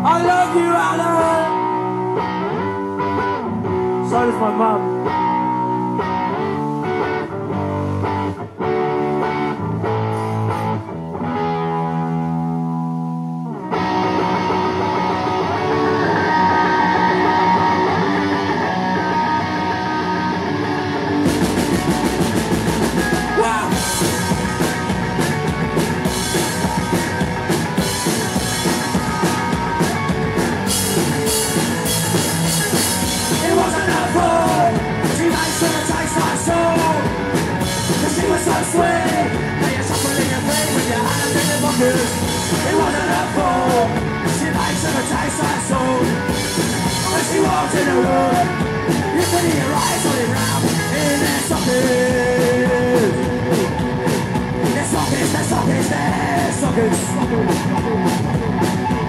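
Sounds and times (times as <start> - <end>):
guitar chords: 0.0 - 59.0
live rock band playing: 0.0 - 59.0
drums playing hard: 21.2 - 59.0.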